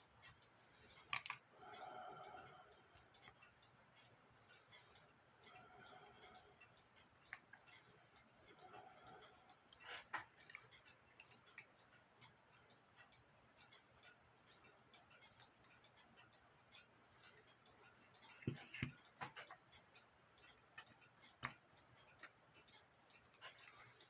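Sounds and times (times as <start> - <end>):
small metal clicks and taps: 0.0 - 1.5, 13.7 - 24.0.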